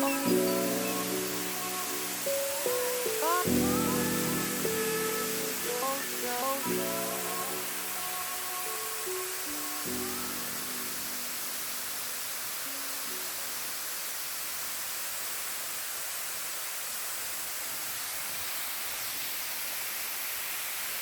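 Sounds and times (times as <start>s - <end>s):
background music: 0.0s - 11.8s
waterfall rushing: 0.0s - 21.0s.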